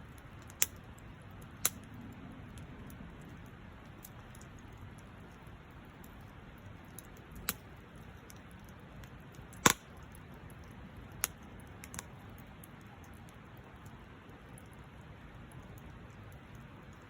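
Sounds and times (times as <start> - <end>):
campfire crackling: 0.0 - 17.0
sharp pops of fire: 0.4 - 0.8, 1.6 - 2.0, 7.4 - 7.7, 9.5 - 10.2, 11.1 - 12.1.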